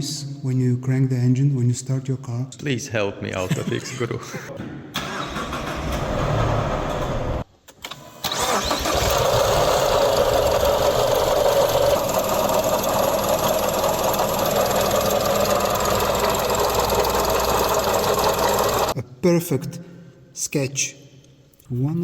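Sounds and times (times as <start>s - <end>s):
car engine running: 9.1s - 19.0s.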